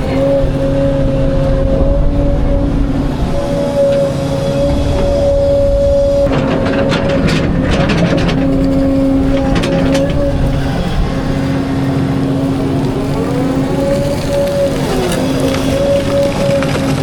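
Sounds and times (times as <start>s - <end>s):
excavator engine droning: 0.0s - 17.0s
bucket clanking on rock: 6.2s - 11.0s.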